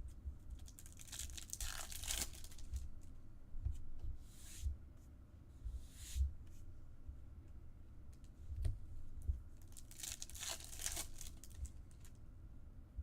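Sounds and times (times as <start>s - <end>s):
wrapper tearing and crinkling: 0.7s - 2.8s, 9.7s - 12.1s.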